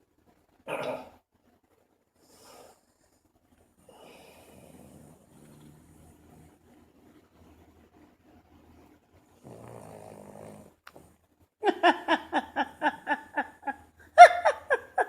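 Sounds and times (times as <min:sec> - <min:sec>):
dog snoring: 0:04.0 - 0:06.6, 0:09.4 - 0:10.8.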